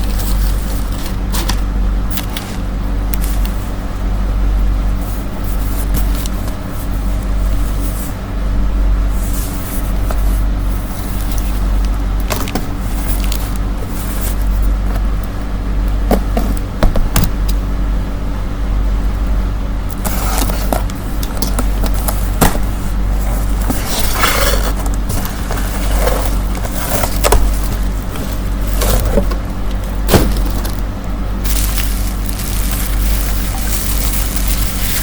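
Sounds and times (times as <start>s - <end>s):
rustling: 0.0s - 3.8s, 20.0s - 35.0s.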